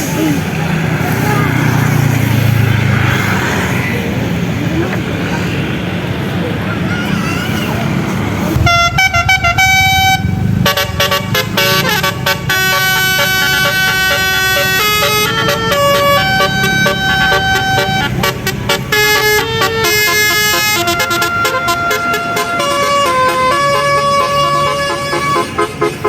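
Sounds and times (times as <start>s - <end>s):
low rumble: 8.2s - 11.8s
musical air horn melody: 8.5s - 26.0s.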